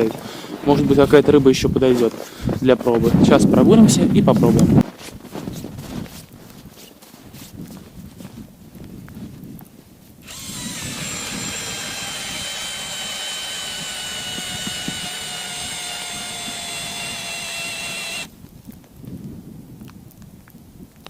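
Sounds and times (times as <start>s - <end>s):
cordless drill motor whine: 10.2s - 18.3s.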